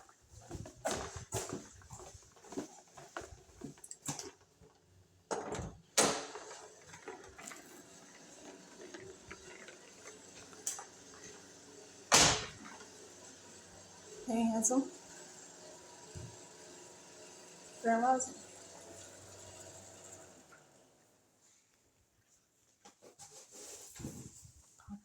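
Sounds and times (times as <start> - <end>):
footsteps indoors: 0.0 - 4.7
loud sharp knocks: 12.1 - 12.6.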